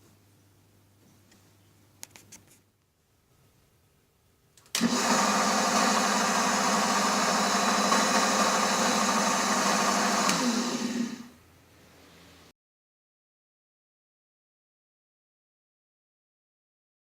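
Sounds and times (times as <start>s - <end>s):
electric machine-tool motor running: 4.8s - 11.3s.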